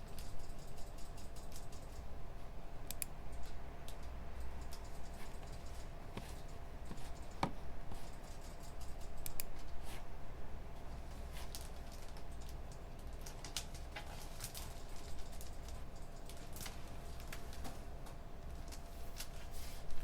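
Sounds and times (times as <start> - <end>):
computer keyboard typing: 0.0 - 2.1, 2.8 - 9.8, 11.5 - 17.6
steady low hum: 0.0 - 20.0.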